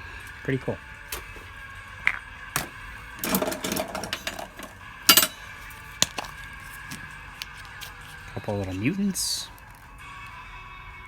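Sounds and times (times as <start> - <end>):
toy capsules handled: 1.1 - 9.8
vending machine clicks and rattling: 2.6 - 5.5.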